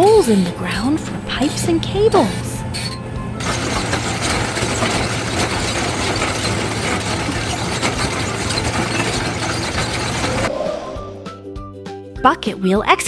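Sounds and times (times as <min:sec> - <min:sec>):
trencher engine running: 0:00.0 - 0:10.5
rattle of digging machinery: 0:00.2 - 0:10.5.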